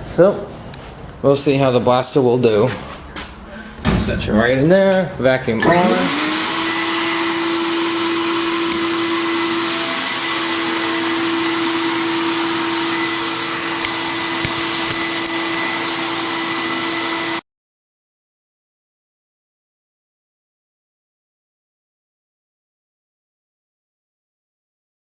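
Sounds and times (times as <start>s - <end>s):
vacuum whining and hissing: 5.6s - 17.4s.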